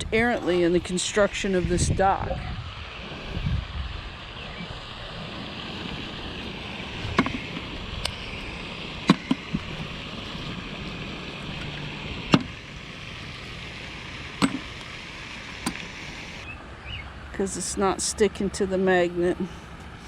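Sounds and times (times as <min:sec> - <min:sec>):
outdoor background noise: 0:00.0 - 0:20.0
sharp clicks and knocks: 0:07.1 - 0:08.2, 0:09.0 - 0:09.8, 0:11.6 - 0:12.6, 0:14.4 - 0:14.9, 0:15.6 - 0:16.0.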